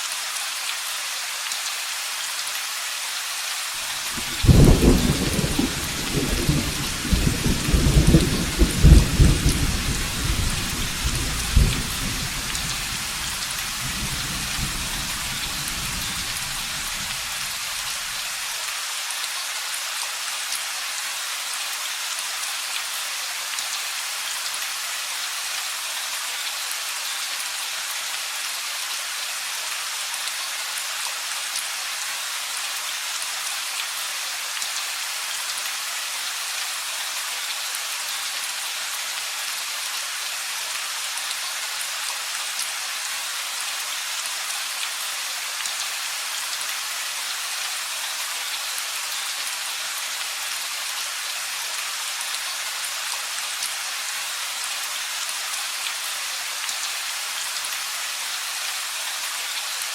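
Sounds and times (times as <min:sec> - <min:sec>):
rain hissing: 0:03.5 - 0:18.9
thunder rumbling: 0:04.2 - 0:12.8.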